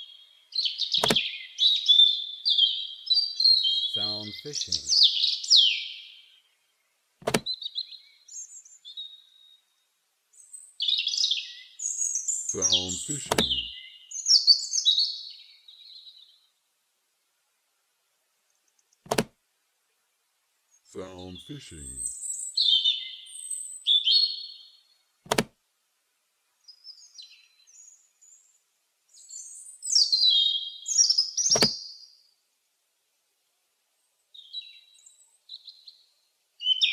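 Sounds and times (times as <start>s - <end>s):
robin chirping and whistling: 0.5s - 4.0s, 4.9s - 6.2s, 10.4s - 16.3s, 22.0s - 24.7s, 29.1s - 32.0s, 36.6s - 36.9s
sharp click: 1.0s - 1.2s, 7.2s - 7.5s, 13.2s - 13.6s, 18.8s - 19.4s, 25.3s - 25.6s, 31.5s - 31.8s.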